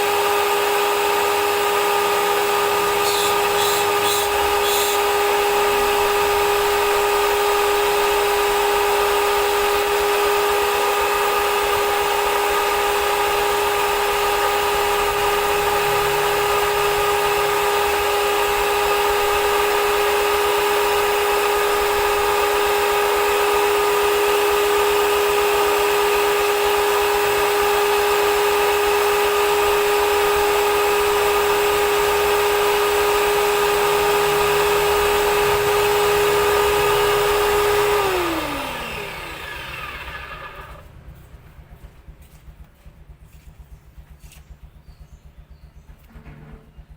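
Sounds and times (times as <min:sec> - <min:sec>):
pressure washer motor whining: 0:00.0 - 0:41.8.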